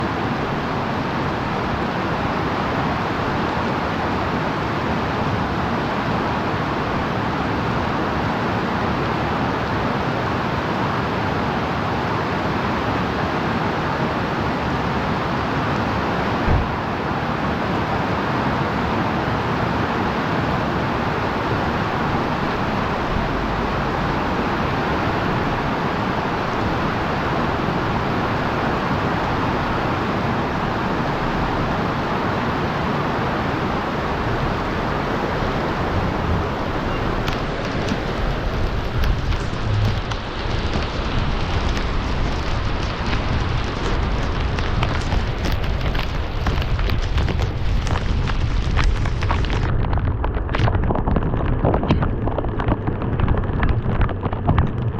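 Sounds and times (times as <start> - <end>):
heavy rain: 0.0 - 54.9
wet tyre and road noise: 0.0 - 54.9
thump: 16.5 - 16.7.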